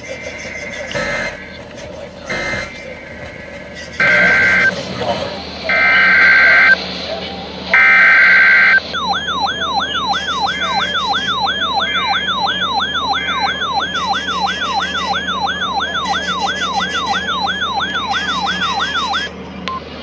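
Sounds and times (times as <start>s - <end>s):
data tone burst: 0.8s - 1.6s, 2.3s - 2.8s, 4.0s - 4.8s, 5.7s - 6.8s, 7.8s - 19.8s
downward sweeping alert tone: 0.8s - 1.6s, 2.3s - 2.8s, 4.0s - 4.8s, 5.7s - 6.8s, 7.8s - 19.3s.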